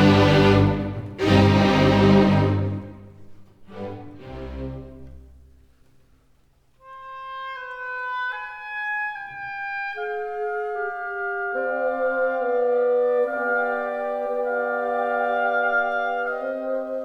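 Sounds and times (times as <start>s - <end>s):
slow instrumental music: 0.0s - 5.3s.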